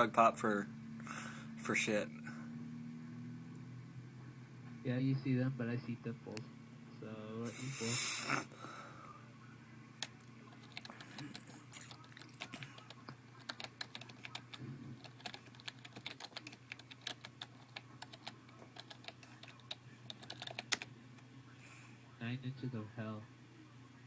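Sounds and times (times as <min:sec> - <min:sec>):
low steady hum: 0:00.0 - 0:24.0
computer keyboard typing: 0:10.0 - 0:20.9.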